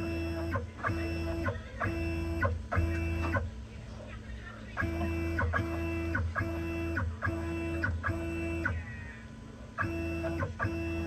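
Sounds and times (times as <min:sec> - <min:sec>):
stepper motor whine: 0:09.8 - 0:11.0.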